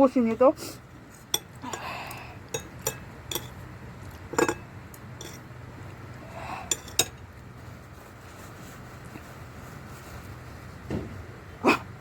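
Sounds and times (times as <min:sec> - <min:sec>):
utensils clinking on plate: 0:02.5 - 0:03.6, 0:04.3 - 0:05.4, 0:06.7 - 0:07.2.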